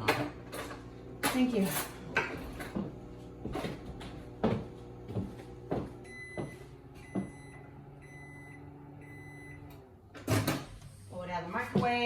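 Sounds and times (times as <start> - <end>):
microwave oven humming: 0.0 - 10.2
microwave beeps: 6.0 - 9.9.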